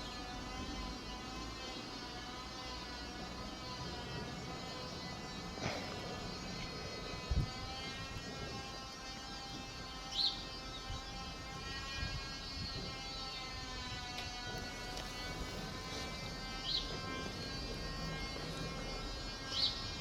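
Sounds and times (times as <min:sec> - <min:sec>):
electric motor siren: 0:00.0 - 0:20.0
bird chirping: 0:08.7 - 0:13.7, 0:15.8 - 0:17.4, 0:18.1 - 0:20.0.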